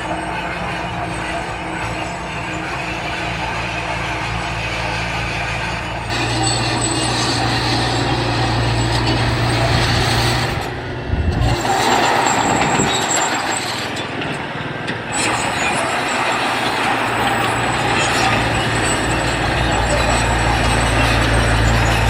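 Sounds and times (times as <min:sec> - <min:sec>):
diesel machinery engine under load: 0:00.0 - 0:22.0
low rumble: 0:09.6 - 0:11.7.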